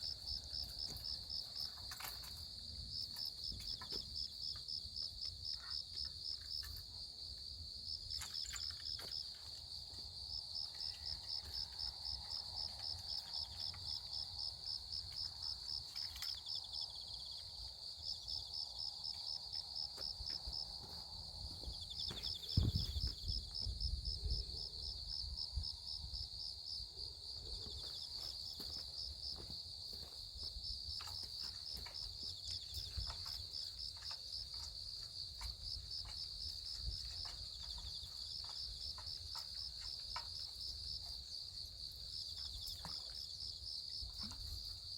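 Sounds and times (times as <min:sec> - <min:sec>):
insects chirping: 0:00.0 - 0:44.9
dull knock: 0:22.2 - 0:23.8.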